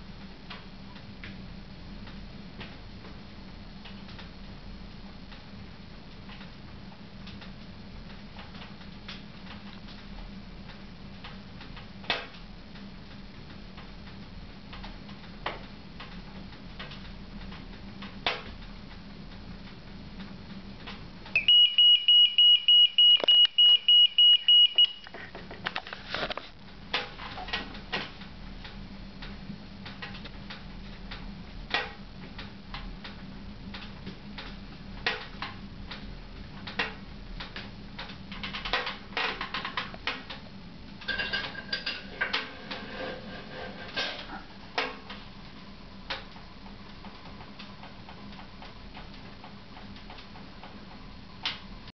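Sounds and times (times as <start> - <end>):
clicks and crackles: 0.2 - 21.5, 23.0 - 51.9
high-pitched alarm beeping: 21.4 - 25.1.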